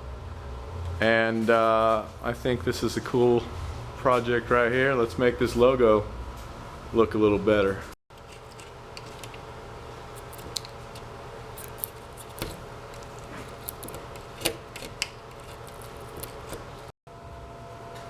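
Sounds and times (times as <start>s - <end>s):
steady electrical hum: 0.0s - 18.0s.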